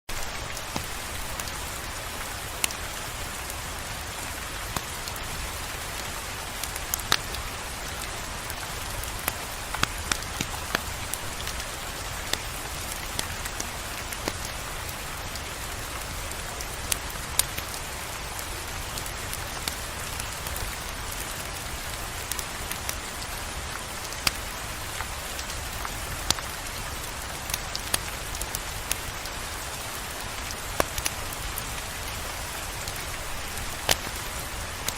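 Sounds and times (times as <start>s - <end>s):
rain hissing: 0.1s - 34.9s.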